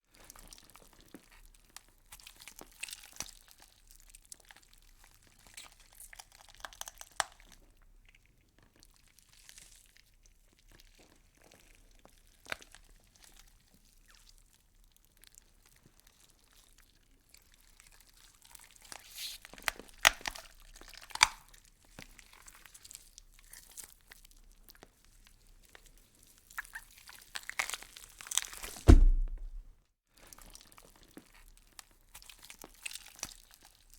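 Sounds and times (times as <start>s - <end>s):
low thump: 28.8s - 29.7s.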